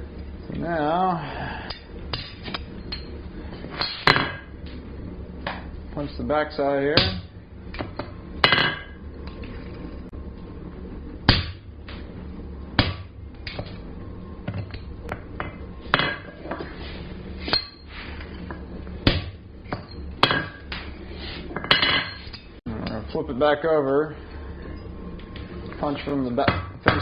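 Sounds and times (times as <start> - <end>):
hammer striking metal punch: 3.8 - 4.5, 7.0 - 7.3, 7.9 - 9.0, 11.3 - 11.6.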